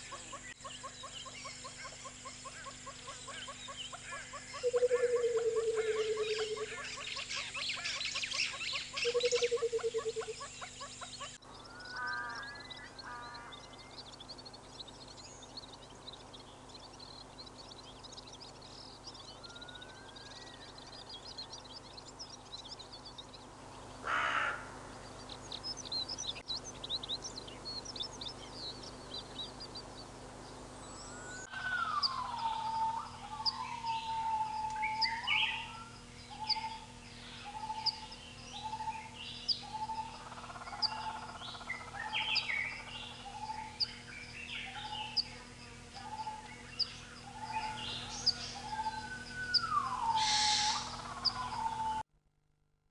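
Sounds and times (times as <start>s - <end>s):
birds chirping and calling: 0.0s - 52.0s
bird giving long falling call: 2.5s - 10.5s, 11.5s - 14.0s, 23.8s - 25.4s, 31.0s - 43.9s, 46.0s - 52.0s.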